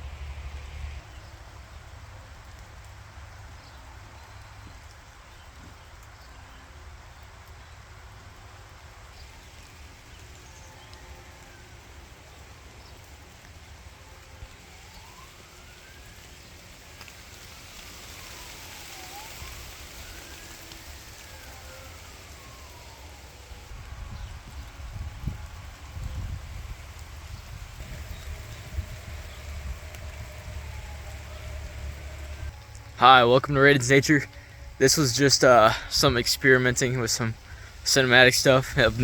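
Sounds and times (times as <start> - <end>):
steady rain falling: 0.0 - 39.0
siren wailing: 8.7 - 39.0
low rumble: 23.7 - 33.0.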